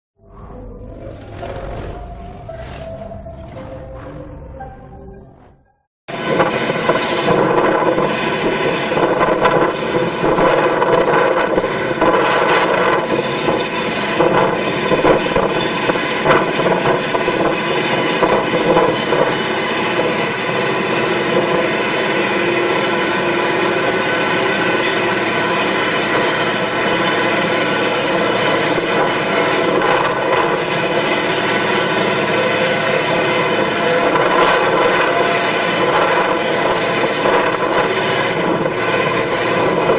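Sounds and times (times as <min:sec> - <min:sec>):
heavy farm machine engine running: 0:00.6 - 0:04.6, 0:13.1 - 0:39.9.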